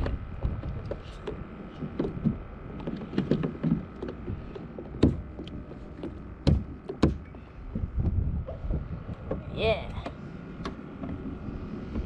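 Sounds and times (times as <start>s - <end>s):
knocks against kayak hull: 0.0s - 9.4s
water: 0.0s - 12.0s
wind: 0.0s - 12.0s.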